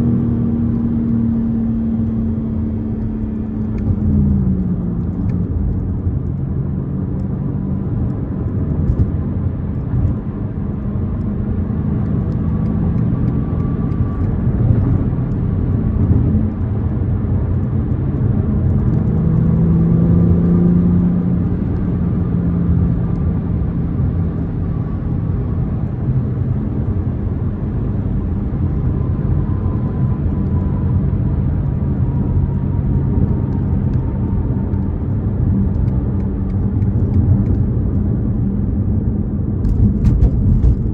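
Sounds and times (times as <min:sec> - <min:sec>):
tyre and road rumble: 0:30.3 - 0:40.9
car engine running: 0:30.4 - 0:40.9.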